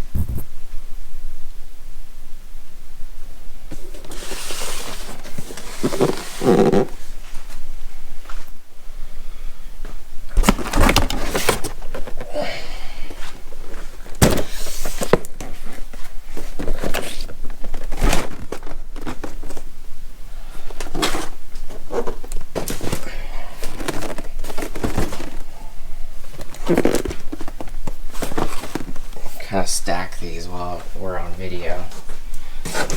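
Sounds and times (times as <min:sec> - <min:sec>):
cardboard scraping and rustling: 0:03.7 - 0:08.5, 0:10.3 - 0:12.3, 0:13.1 - 0:19.8, 0:20.6 - 0:25.6, 0:26.2 - 0:29.7, 0:30.8 - 0:32.9.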